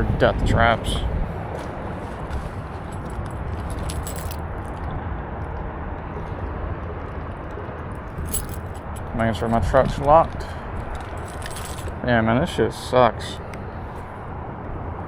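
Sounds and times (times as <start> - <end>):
steady background noise: 0.0 - 15.0
keys jingling: 2.4 - 4.8, 8.2 - 9.6, 10.8 - 12.0.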